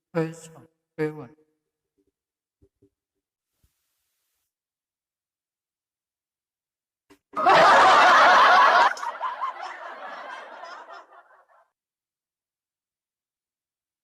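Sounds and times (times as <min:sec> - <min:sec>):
canned audience laughter: 0:07.4 - 0:11.7.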